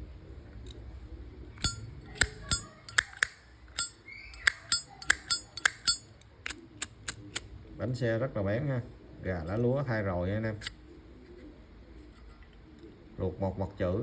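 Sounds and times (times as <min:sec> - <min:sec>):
lighter lid clicking metallic: 0:01.6 - 0:06.1, 0:06.8 - 0:07.4.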